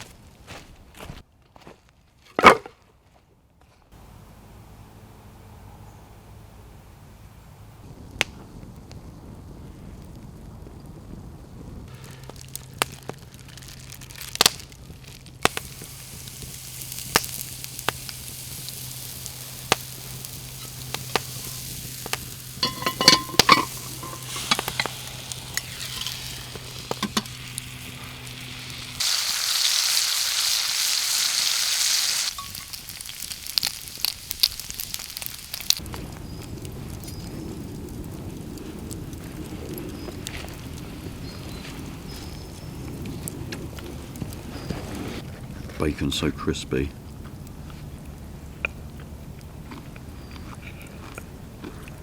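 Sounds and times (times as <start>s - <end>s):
bacon sizzling in a pan: 15.4s - 36.4s
metal utensil clinks: 22.6s - 25.1s.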